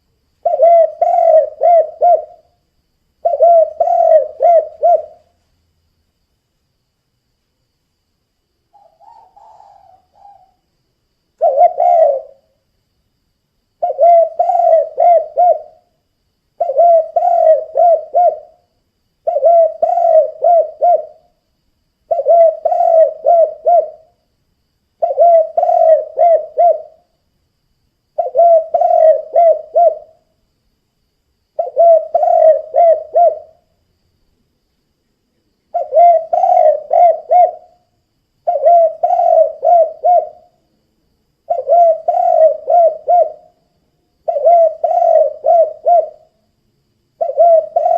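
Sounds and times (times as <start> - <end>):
dove cooing: 0.4 - 2.5, 3.2 - 5.4, 8.7 - 10.6, 11.4 - 12.6, 13.8 - 15.9, 16.6 - 18.6, 19.2 - 21.3, 22.1 - 24.2, 25.0 - 27.0, 28.2 - 30.2, 31.6 - 33.6, 35.7 - 40.6, 41.5 - 43.6, 44.2 - 46.3, 47.2 - 47.9.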